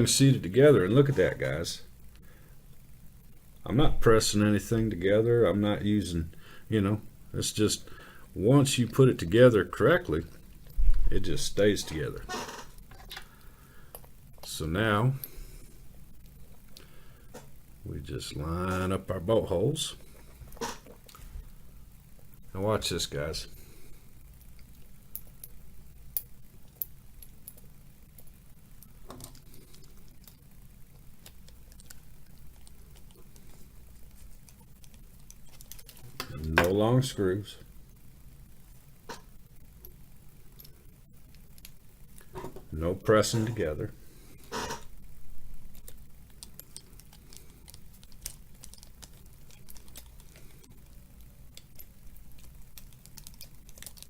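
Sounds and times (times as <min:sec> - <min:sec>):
low steady hum: 0:00.0 - 0:54.0
parts clattering: 0:44.4 - 0:44.9
small hard parts clicking: 0:45.7 - 0:54.0.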